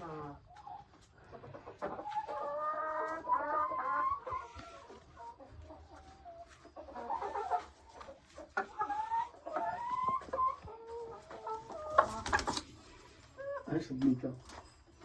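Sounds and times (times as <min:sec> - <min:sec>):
hens clucking: 0:00.0 - 0:15.0.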